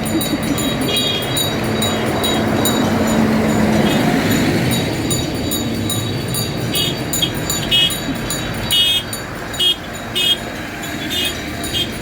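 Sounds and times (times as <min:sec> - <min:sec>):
rumble of passing vehicles: 0:00.0 - 0:12.0
high-pitched vehicle horn beeps: 0:06.7 - 0:12.0.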